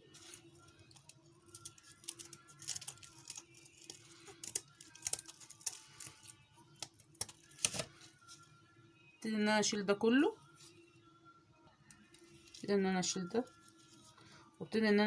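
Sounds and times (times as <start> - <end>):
shrimp shells crackling: 0.1 - 7.9
scissors snipping: 1.0 - 7.9.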